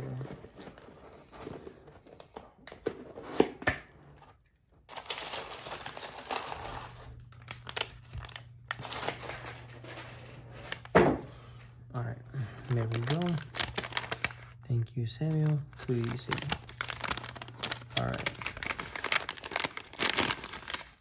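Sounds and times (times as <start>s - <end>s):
packaging crinkling and rustling: 4.1s - 11.7s, 12.4s - 21.0s.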